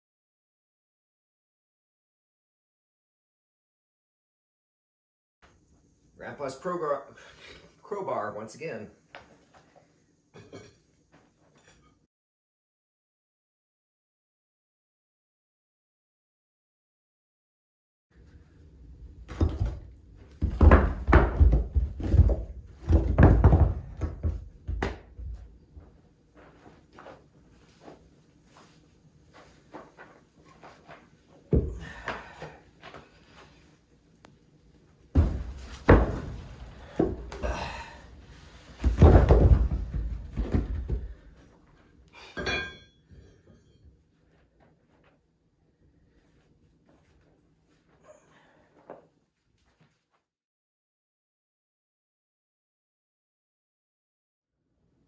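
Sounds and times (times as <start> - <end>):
stones thunking and scraping: 19.3 - 25.4, 35.2 - 38.0, 38.6 - 41.3
ringing metal clank: 42.4 - 43.8.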